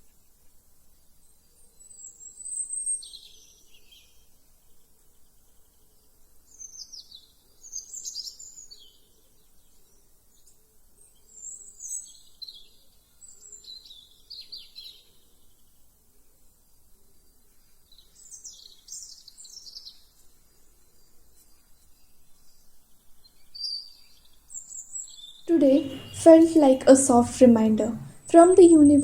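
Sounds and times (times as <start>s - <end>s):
songbird chirping: 17.6s - 20.3s, 21.0s - 29.0s.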